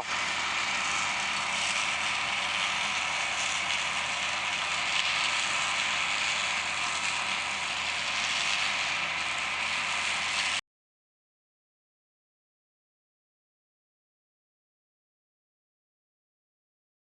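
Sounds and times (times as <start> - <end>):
combine harvester rattle and hiss: 0.0 - 10.6
faint low engine hum: 0.0 - 10.6.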